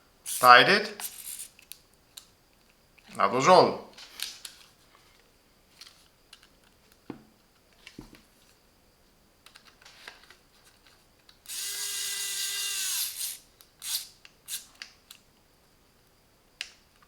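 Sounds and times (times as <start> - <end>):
electric screwdriver motor whine: 11.5 - 14.0.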